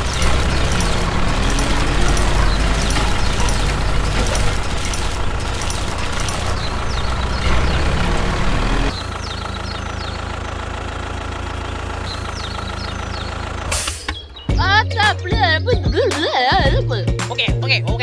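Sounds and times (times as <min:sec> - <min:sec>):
engine running: 0:00.0 - 0:17.8.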